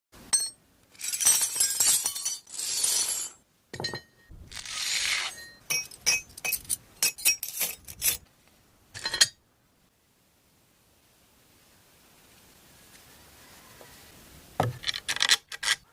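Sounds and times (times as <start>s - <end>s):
ringing glassy clinks and crashes: 0.3s - 4.3s, 5.2s - 8.1s.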